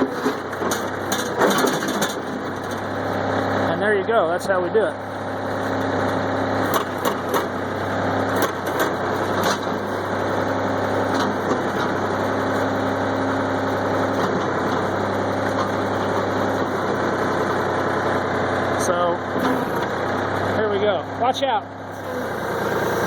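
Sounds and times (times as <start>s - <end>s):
trash cracking and snapping: 0.0s - 3.0s, 6.7s - 7.6s, 8.3s - 9.8s
diesel engine running: 0.0s - 23.0s.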